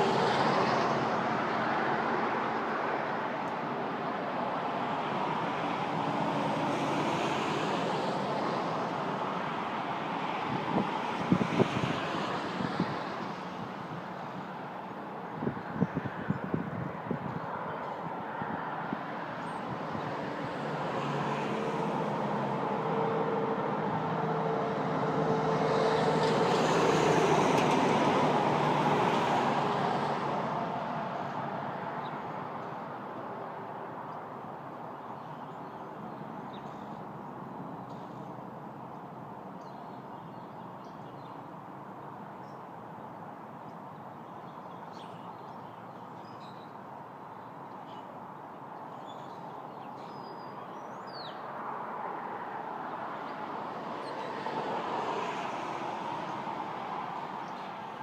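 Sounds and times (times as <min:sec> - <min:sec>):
road vehicle passing by: 0:00.0 - 0:35.3, 0:51.1 - 0:58.0.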